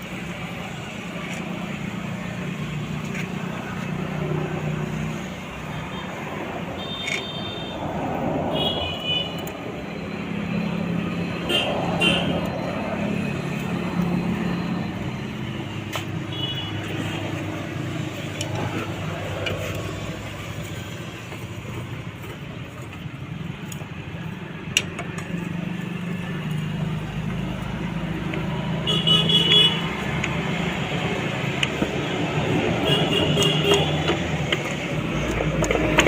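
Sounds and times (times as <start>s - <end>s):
road traffic passing: 0.0s - 36.0s
vehicle horn tooting: 11.5s - 12.4s, 28.8s - 29.9s, 32.8s - 34.0s.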